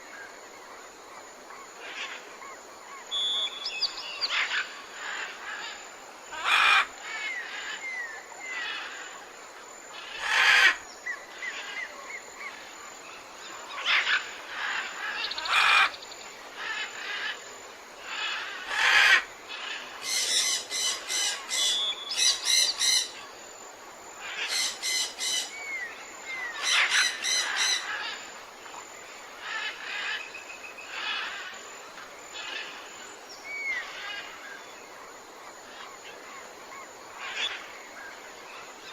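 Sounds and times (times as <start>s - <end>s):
steady background hiss: 0.0s - 38.9s
whistled bird notes: 3.1s - 4.4s.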